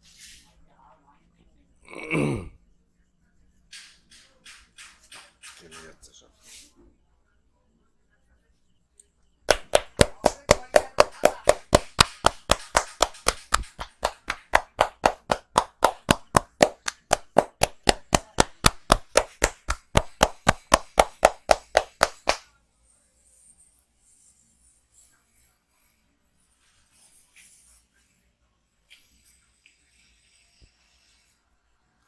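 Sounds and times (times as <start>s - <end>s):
hands slapping during massage: 9.5s - 22.4s.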